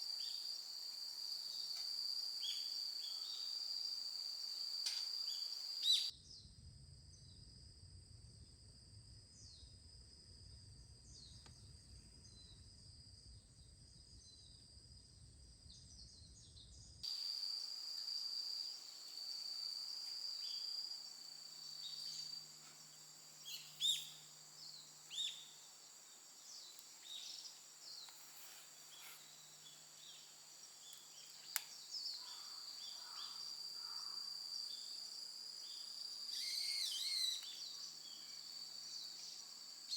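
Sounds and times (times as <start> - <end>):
high-pitched insect drone: 0.0 - 6.1, 17.0 - 39.9
birds chirping: 21.7 - 28.2.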